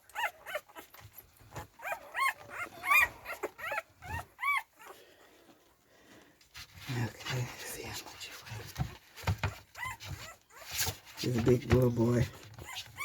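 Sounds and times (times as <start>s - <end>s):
puppies whining: 0.0s - 5.6s, 9.0s - 13.0s.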